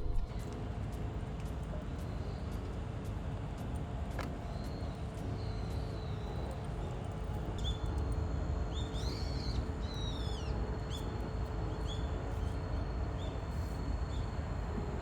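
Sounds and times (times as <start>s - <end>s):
steady low rumble: 0.0s - 9.0s.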